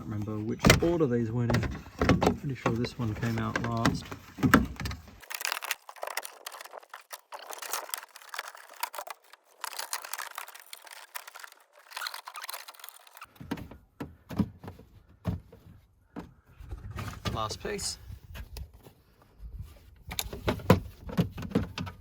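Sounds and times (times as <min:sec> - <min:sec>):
plastic rustling and crinkling: 0:00.1 - 0:13.4.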